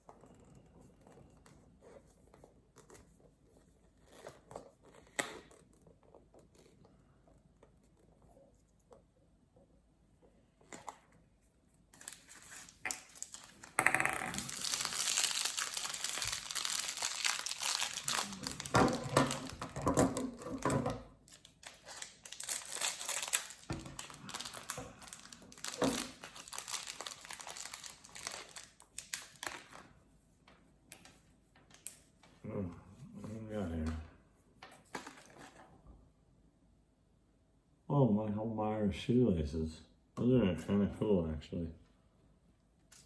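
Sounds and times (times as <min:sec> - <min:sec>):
plastic packaging crinkling: 0:11.9 - 0:29.9.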